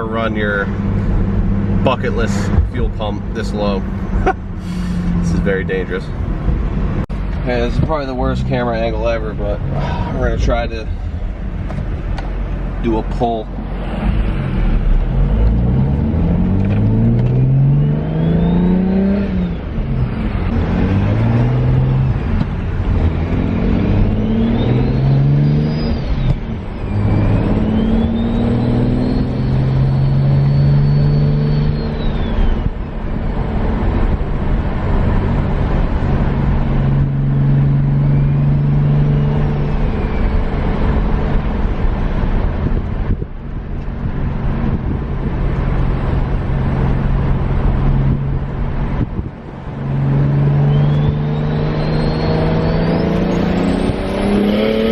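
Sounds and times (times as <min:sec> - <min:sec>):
car engine accelerating: 0:00.0 - 0:54.9.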